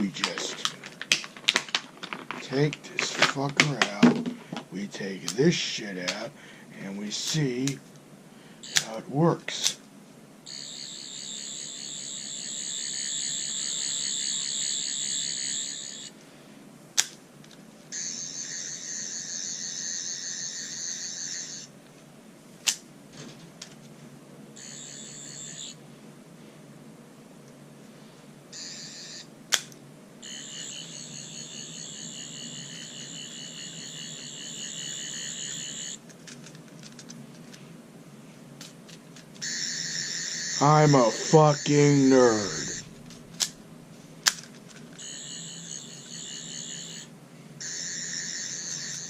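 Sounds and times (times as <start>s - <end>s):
toy high warbling whir: 10.5s - 16.1s, 18.0s - 21.7s, 24.6s - 25.8s, 28.6s - 29.3s, 30.2s - 36.0s, 39.4s - 42.9s, 45.0s - 49.0s.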